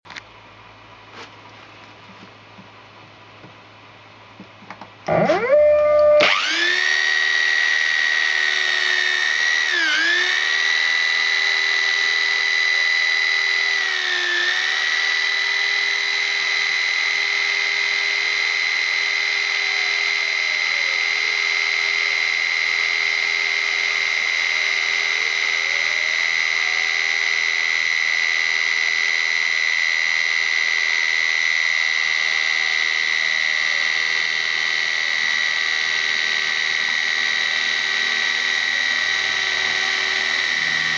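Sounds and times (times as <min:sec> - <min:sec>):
machine high whine: 0:05.0 - 0:40.9
faint rising and falling tones: 0:32.2 - 0:40.9.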